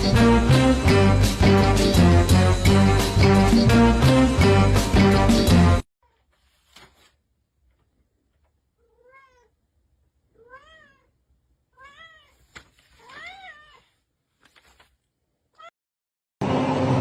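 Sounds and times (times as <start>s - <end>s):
cat meowing: 8.8s - 9.6s, 10.3s - 14.0s.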